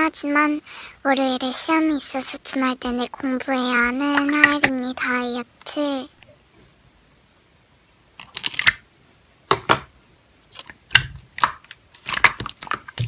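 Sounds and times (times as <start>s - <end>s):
sticky slime squishes: 8.2s - 8.8s, 10.5s - 13.0s.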